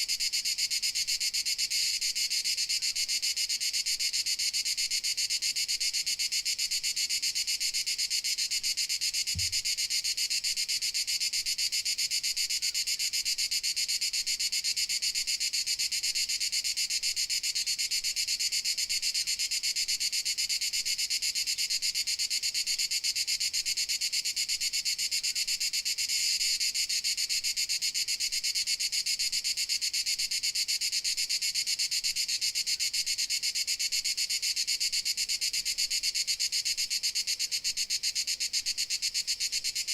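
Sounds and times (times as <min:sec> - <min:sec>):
crickets chirring: 0:07.3 - 0:10.2.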